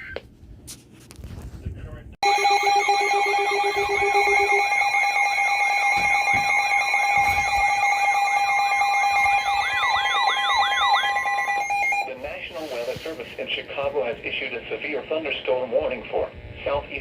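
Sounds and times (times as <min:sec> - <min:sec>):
warbling siren sweeps: 0:02.2 - 0:12.1
steady alarm tones: 0:02.2 - 0:12.6
fast-pulsing low beep: 0:06.0 - 0:12.1.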